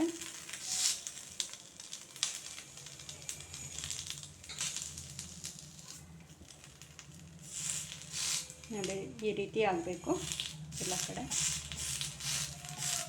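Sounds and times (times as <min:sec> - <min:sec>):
leaf sizzling on hot griddle: 0:00.0 - 0:13.0.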